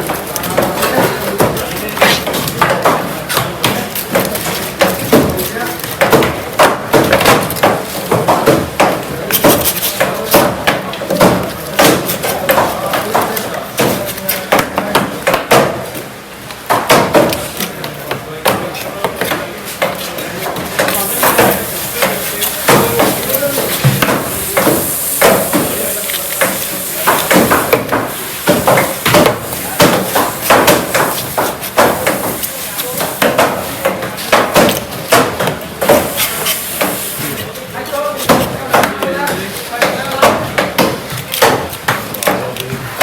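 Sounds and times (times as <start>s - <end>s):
cleaver chopping fish on block: 1.3s - 15.8s, 18.4s - 32.4s
knife chopping fish on block: 20.8s - 37.0s.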